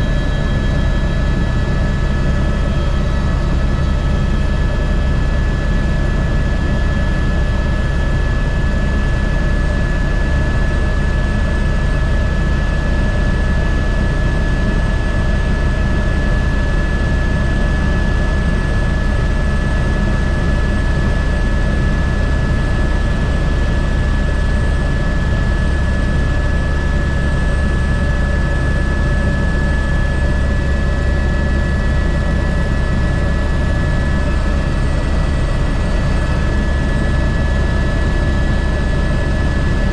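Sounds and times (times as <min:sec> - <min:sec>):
high-pitched engine whine: 0:00.0 - 0:39.9.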